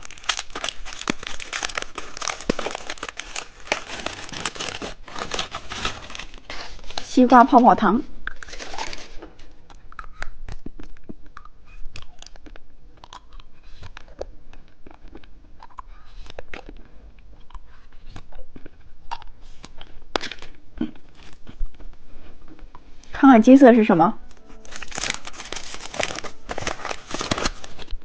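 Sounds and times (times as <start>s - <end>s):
chewing gum crunches: 9.6s - 21.8s
wet mouth clicks: 9.8s - 14.3s, 14.9s - 16.7s, 19.1s - 19.3s.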